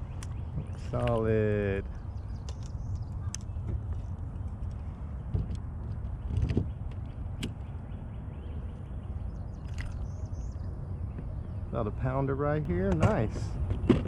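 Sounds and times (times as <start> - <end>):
sharp handling clicks and knocks: 0.1 - 1.4, 2.2 - 7.7, 12.5 - 14.0.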